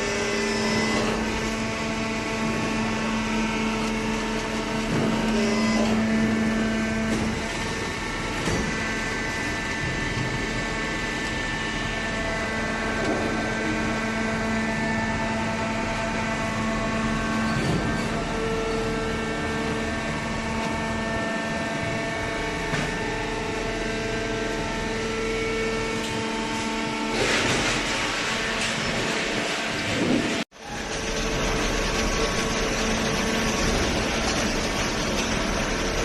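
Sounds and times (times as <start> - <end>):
baler machine hum: 0.0 - 36.0
hydraulic unit whining: 0.0 - 36.0.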